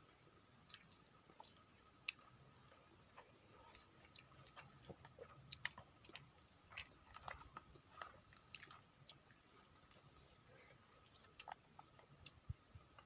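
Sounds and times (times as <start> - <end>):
faint high-pitched whine: 0.0 - 13.0.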